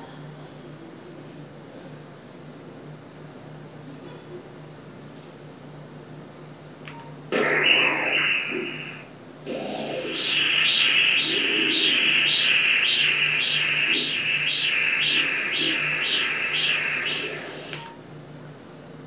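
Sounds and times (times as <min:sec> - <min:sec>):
ultrasound whooshing pulse: 0:07.4 - 0:18.0.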